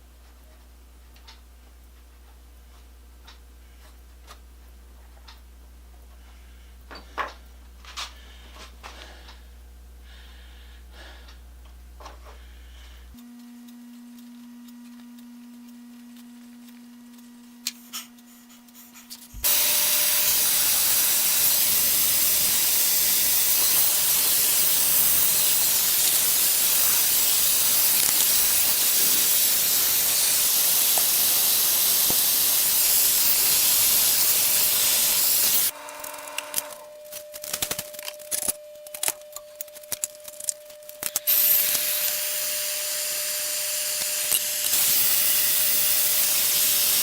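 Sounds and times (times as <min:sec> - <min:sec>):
soldering torch flame hissing: 0:19.4 - 0:35.8, 0:41.2 - 0:47.0
low steady hum: 0:35.7 - 0:41.3.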